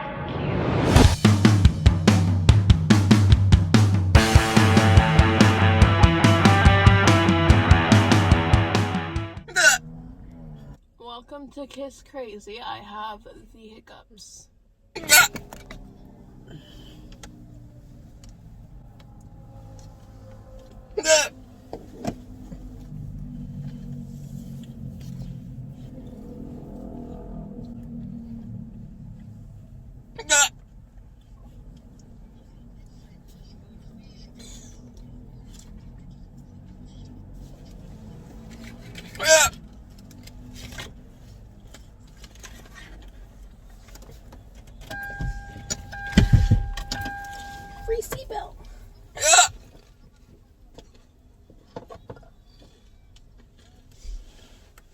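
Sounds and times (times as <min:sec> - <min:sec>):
steady high tone: 0:00.0 - 0:01.3, 0:04.1 - 0:09.4, 0:44.9 - 0:48.0
low rumble inside car: 0:16.6 - 0:38.8, 0:44.9 - 0:48.8.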